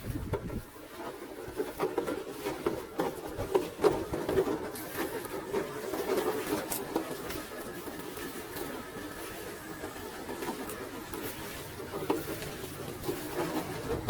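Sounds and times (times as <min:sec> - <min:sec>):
toy car electric motor whirring: 0:01.9 - 0:14.0.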